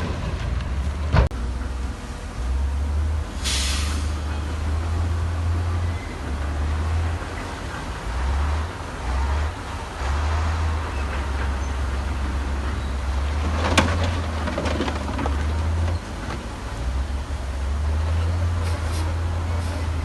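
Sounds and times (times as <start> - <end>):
heavy diesel machinery rumbling: 0.0 - 20.0.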